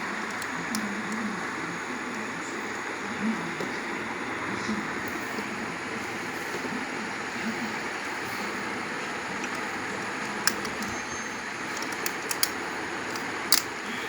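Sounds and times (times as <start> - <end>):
sharp engine clicks: 0.0 - 1.6, 9.0 - 14.0.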